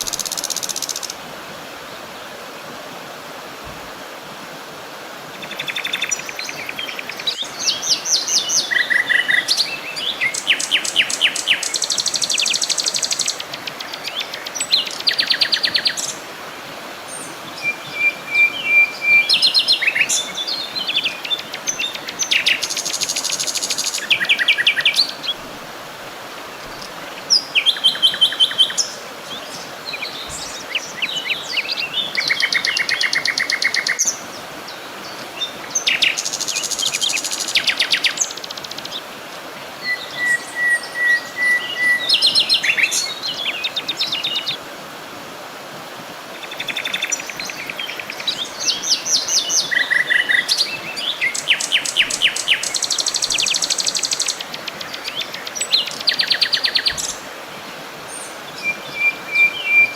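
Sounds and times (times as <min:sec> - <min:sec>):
songbirds singing: 0:00.0 - 0:01.2, 0:05.3 - 0:44.7, 0:46.2 - 0:59.9
soft background hiss: 0:00.0 - 0:41.3.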